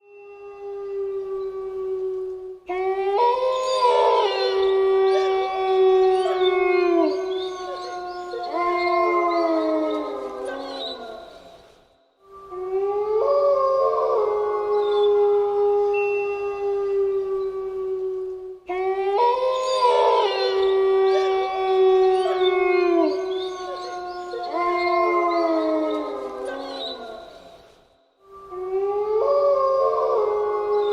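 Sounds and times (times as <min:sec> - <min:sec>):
wolves howling: 0:00.2 - 0:11.5, 0:12.5 - 0:27.5, 0:28.5 - 0:30.9.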